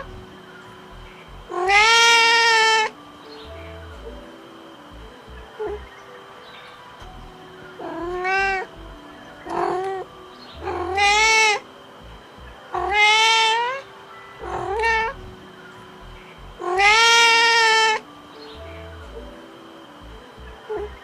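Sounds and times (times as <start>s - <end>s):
cat meowing: 1.5s - 2.9s, 10.6s - 11.6s, 12.8s - 13.8s, 14.4s - 15.2s, 16.6s - 18.0s.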